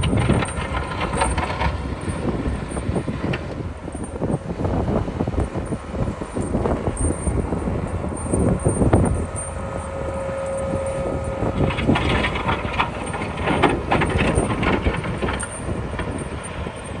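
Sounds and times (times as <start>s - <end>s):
rough scraping or rattling: 0.0s - 4.8s, 5.6s - 17.0s
vehicle engine low rumble: 0.0s - 17.0s.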